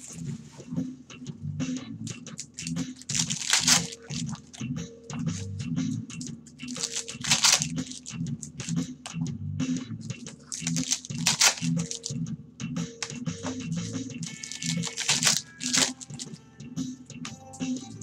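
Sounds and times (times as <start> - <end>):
background music: 0.0 - 18.0
foil wrappers tearing and crinkling: 2.3 - 4.6, 6.7 - 8.2, 10.4 - 12.1, 14.2 - 16.3.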